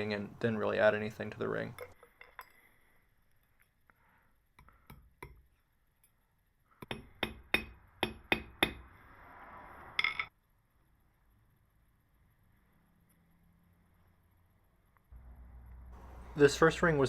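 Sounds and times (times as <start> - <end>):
hammer tapping on metal: 6.8 - 8.8.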